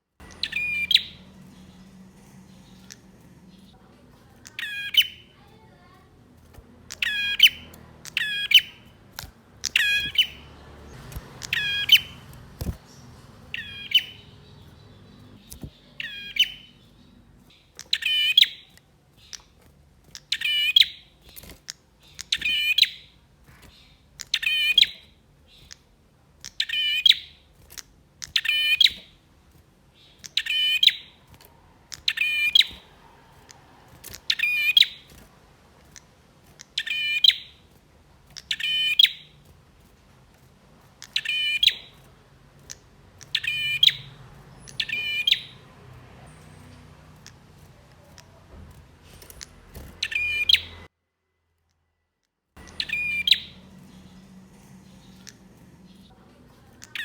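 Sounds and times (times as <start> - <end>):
bird singing high trills: 0.2 - 3.7, 4.4 - 5.6, 6.9 - 9.0, 9.6 - 18.7, 30.1 - 31.2, 31.9 - 35.2, 36.8 - 37.6, 38.4 - 39.4, 41.0 - 42.0, 43.2 - 45.7, 49.4 - 50.9, 52.6 - 56.1.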